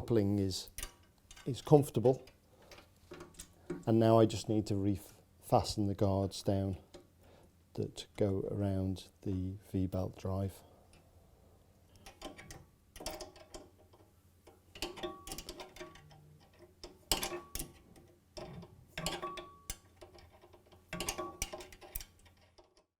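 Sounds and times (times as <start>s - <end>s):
faint steady hum: 0.0s - 22.3s
metal tools clinking: 14.7s - 22.8s.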